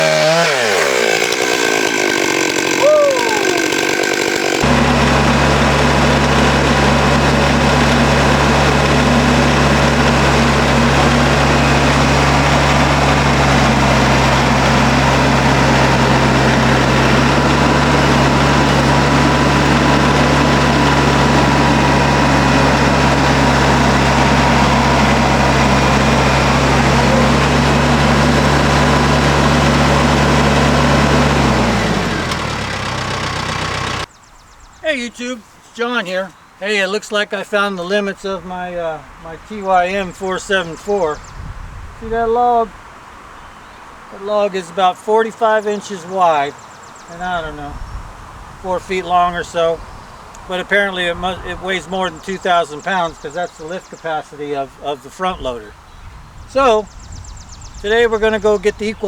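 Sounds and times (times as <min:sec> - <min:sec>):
chainsaw revving: 0:00.0 - 0:34.1
heavy engine idling: 0:00.0 - 0:34.1.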